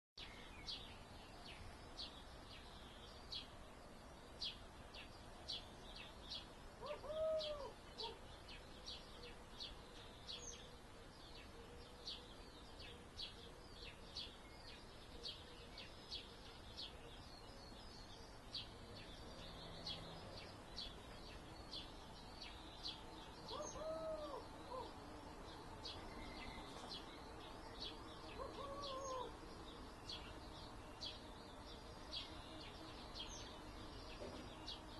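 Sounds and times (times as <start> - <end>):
distant traffic hum: 18.2 - 34.9
lower arching bird call: 28.3 - 29.4.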